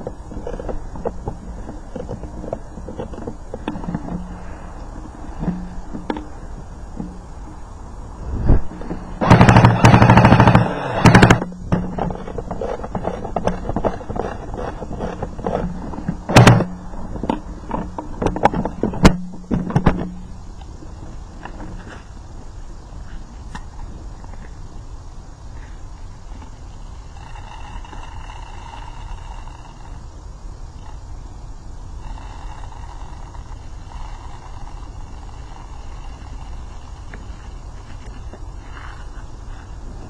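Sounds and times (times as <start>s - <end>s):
airsoft gun firing bursts: 9.2s - 11.5s.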